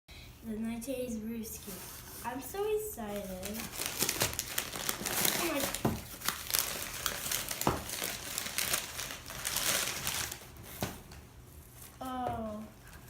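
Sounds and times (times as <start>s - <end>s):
wrapper crinkling: 3.0s - 12.2s.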